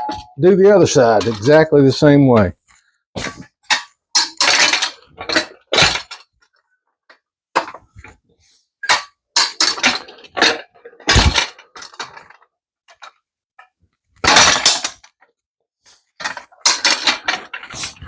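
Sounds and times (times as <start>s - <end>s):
metal clanks and knocks: 0.0s - 1.7s, 3.2s - 6.3s, 8.8s - 13.2s, 16.2s - 18.0s.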